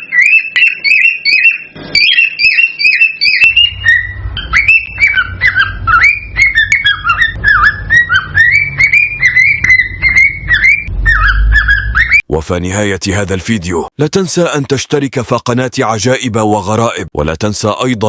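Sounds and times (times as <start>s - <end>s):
cockatiel whistling song: 0.0s - 12.3s.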